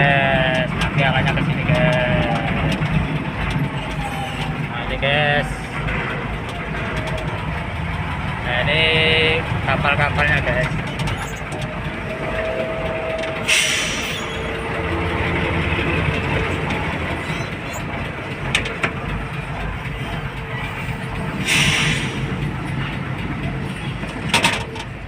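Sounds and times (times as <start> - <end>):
diesel truck engine idling: 0.0 - 25.0
air release hiss: 21.4 - 22.2.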